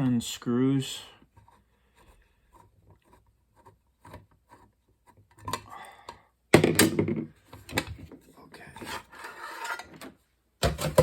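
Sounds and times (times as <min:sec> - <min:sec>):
light rubbing of small parts: 0:00.0 - 0:05.8, 0:07.4 - 0:11.0
scraping rub: 0:01.2 - 0:05.5, 0:08.2 - 0:10.0.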